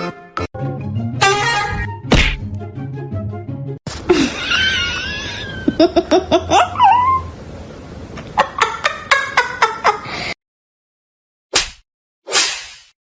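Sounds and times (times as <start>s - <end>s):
brief swish: 11.6s - 13.0s.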